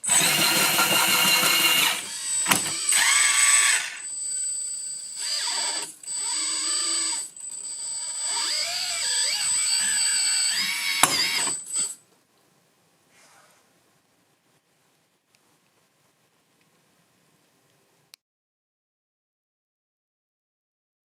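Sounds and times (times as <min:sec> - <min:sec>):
electric motor and hydraulic pump whining: 0:00.0 - 0:12.0.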